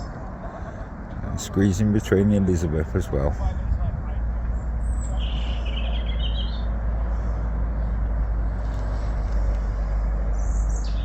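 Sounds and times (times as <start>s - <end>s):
boat engine running: 0.0s - 10.9s
small birds chirping: 4.5s - 7.4s, 10.3s - 11.0s.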